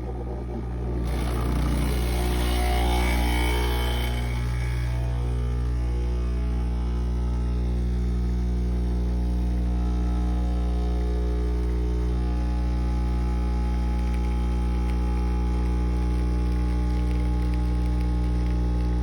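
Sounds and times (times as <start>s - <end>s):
espresso machine pump buzzing: 0.0s - 19.0s.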